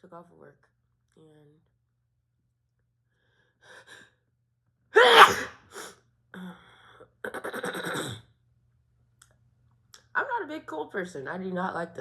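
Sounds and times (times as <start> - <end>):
woman sneezing: 5.0 - 5.6.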